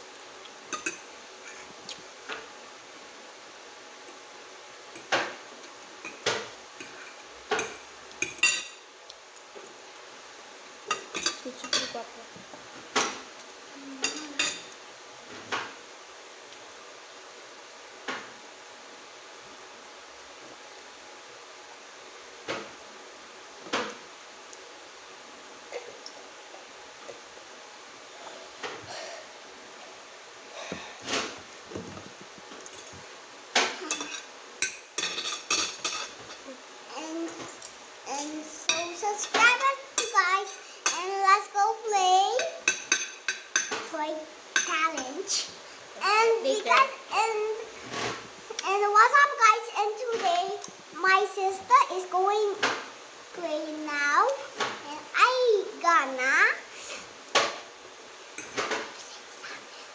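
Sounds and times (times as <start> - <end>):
cutlery clinking against a plate: 33.8 - 36.2.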